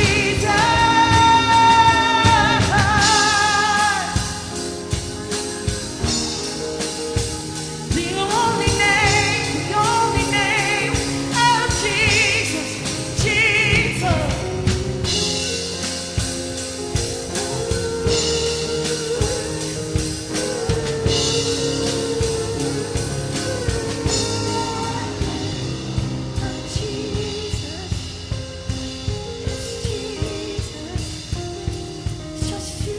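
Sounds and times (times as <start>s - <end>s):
singer with vibrato: 0.0s - 14.5s, 17.2s - 28.5s
drum kit: 0.0s - 32.9s
gospel worship band playing: 0.0s - 32.9s.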